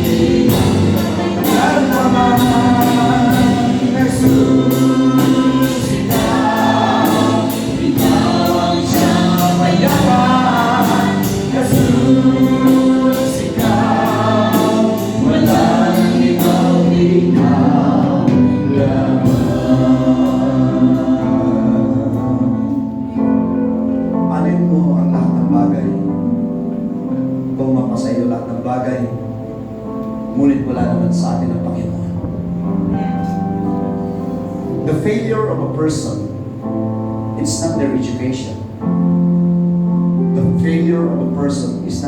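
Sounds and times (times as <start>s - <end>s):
music with steady beat: 0.0s - 23.0s
gospel choir singing: 0.0s - 23.9s.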